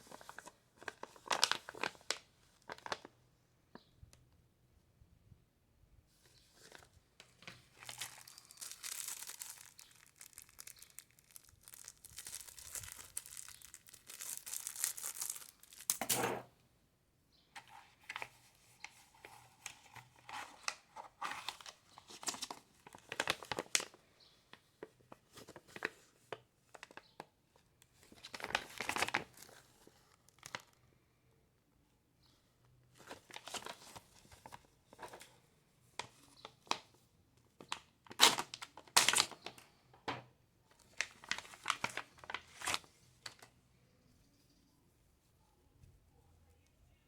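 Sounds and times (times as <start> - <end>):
packaging rustling and crackling: 0.0 - 3.1, 6.6 - 16.1, 18.1 - 24.0, 28.0 - 30.8, 33.0 - 35.2, 37.6 - 39.6, 40.8 - 43.5
packaging tearing: 7.8 - 16.1, 22.2 - 23.9, 38.1 - 39.6.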